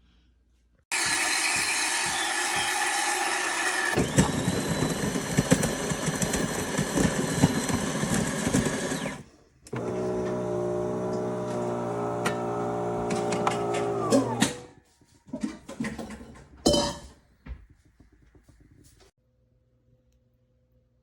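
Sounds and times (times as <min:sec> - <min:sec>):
loud machine running: 0:00.9 - 0:14.4.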